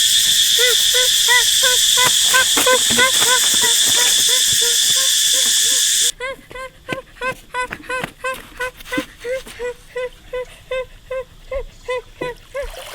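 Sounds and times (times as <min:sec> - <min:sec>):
rising and falling animal call: 0:00.0 - 0:06.1
shrill insect drone: 0:00.0 - 0:06.1.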